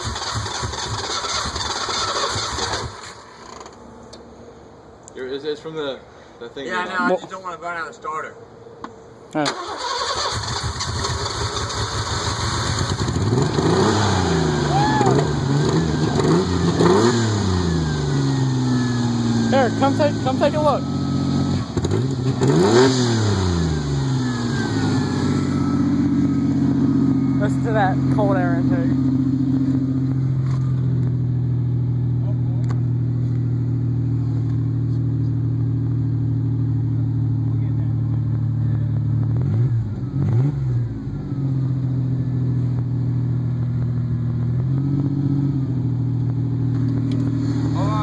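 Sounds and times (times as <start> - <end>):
car engine revving and idling: 10.3 - 48.0.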